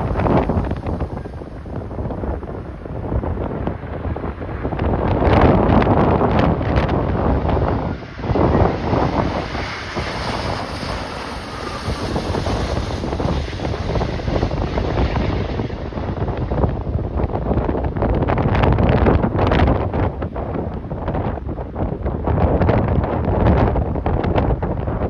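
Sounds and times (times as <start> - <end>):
wind buffeting microphone: 0.0 - 25.0.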